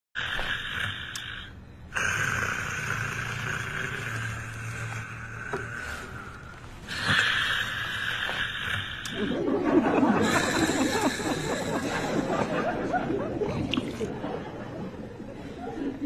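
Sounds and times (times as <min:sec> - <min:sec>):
person snoring: 0:00.2 - 0:12.5.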